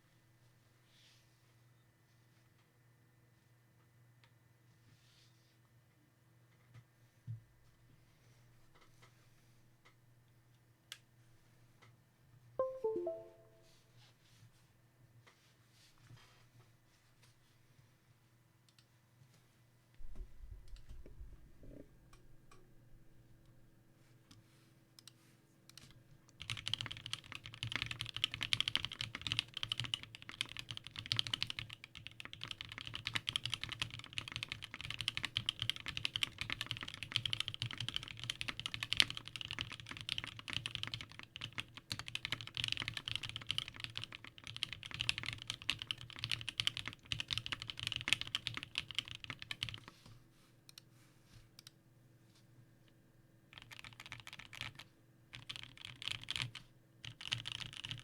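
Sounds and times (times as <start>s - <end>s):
fast typing on mechanical keyboard: 25.8s - 49.9s, 53.5s - 58.0s.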